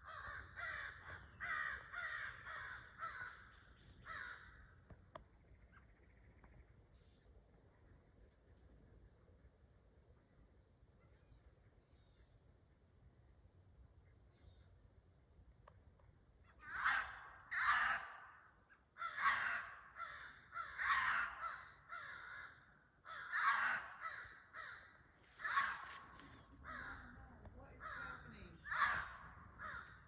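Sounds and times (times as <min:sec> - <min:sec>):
high insect drone: 0:00.0 - 0:30.0
animal screaming calls: 0:16.6 - 0:18.2, 0:25.4 - 0:26.1.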